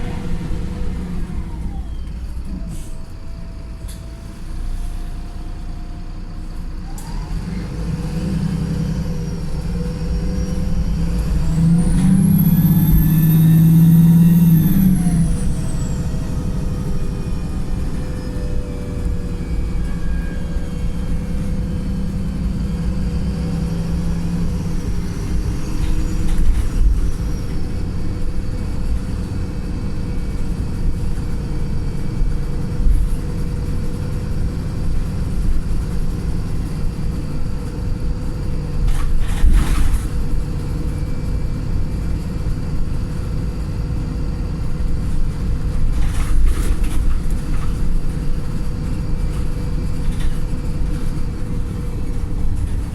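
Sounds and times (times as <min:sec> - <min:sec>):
bus diesel engine droning: 0:00.0 - 0:52.9.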